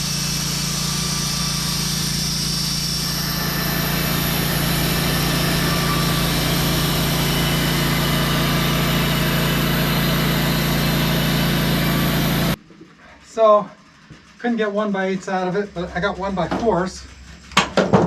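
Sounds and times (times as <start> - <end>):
sawmill engine running: 0.0 - 12.6.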